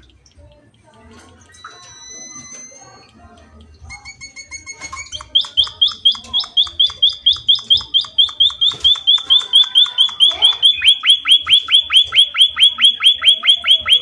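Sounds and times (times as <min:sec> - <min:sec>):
sharp high bird chirps: 0:04.1 - 0:14.0.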